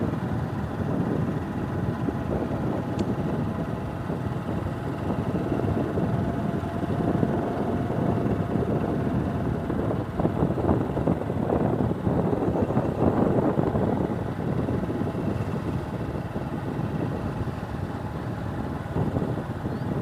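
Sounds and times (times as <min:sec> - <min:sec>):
vehicle engine and road noise: 0:00.0 - 0:20.0
wind buffeting: 0:00.0 - 0:20.0.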